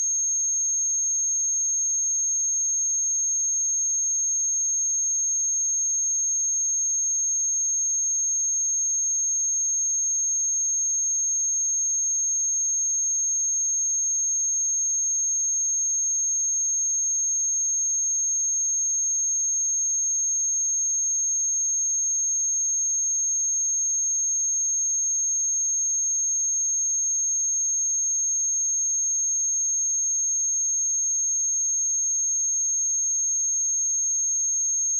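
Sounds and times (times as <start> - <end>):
high-pitched sine test tone: 17.8 - 34.9.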